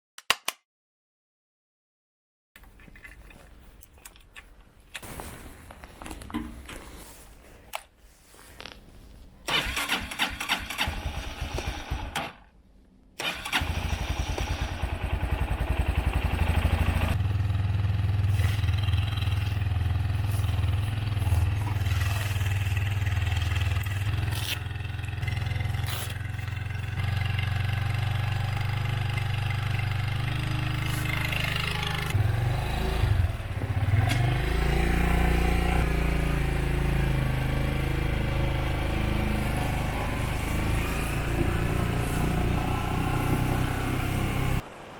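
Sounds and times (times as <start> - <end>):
motorcycle engine cranking: 9.5 - 12.4, 13.2 - 17.1
motorcycle engine idling: 13.7 - 32.2.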